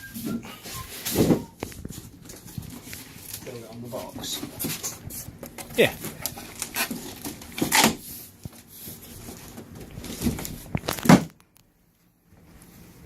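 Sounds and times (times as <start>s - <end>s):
cardboard rustling and tearing: 0.9s - 11.3s.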